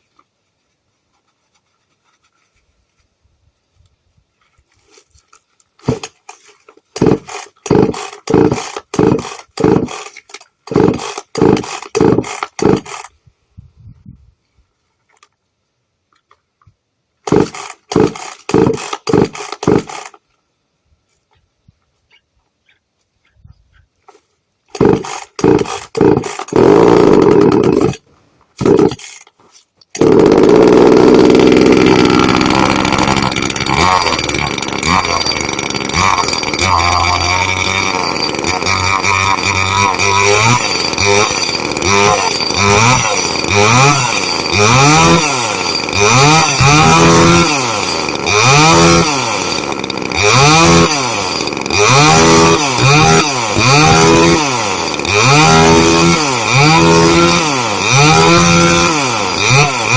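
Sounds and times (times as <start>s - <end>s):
chainsaw revving in bursts: 7.0s - 13.1s, 17.3s - 20.2s, 24.7s - 28.0s, 28.6s - 29.1s, 30.0s - 59.9s.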